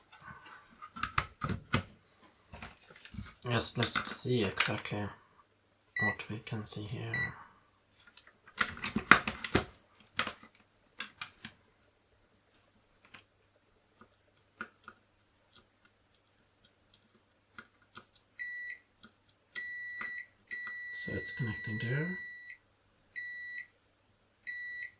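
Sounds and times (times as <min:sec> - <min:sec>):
multimeter continuity beep: 0:06.0 - 0:06.2, 0:18.4 - 0:18.8, 0:19.6 - 0:22.6, 0:23.2 - 0:23.7, 0:24.5 - 0:24.9.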